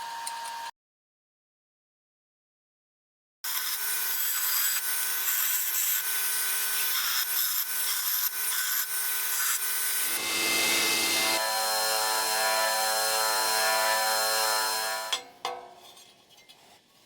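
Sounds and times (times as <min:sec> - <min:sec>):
power tool motor whine: 0:06.8 - 0:15.1
scraping cutting noise: 0:06.8 - 0:15.1.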